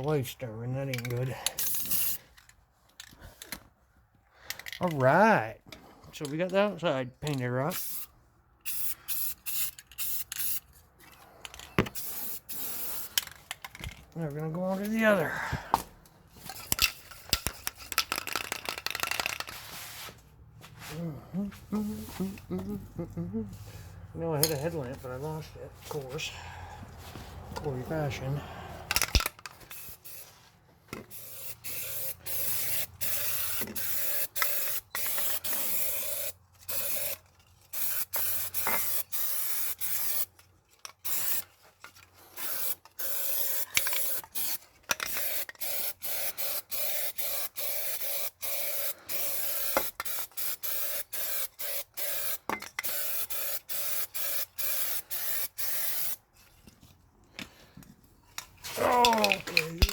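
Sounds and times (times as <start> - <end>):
spray paint can hissing: 1.6 - 2.2, 7.8 - 10.6, 12.0 - 13.2, 16.7 - 20.1, 29.0 - 30.3, 31.1 - 40.3, 41.0 - 41.5, 42.4 - 56.2.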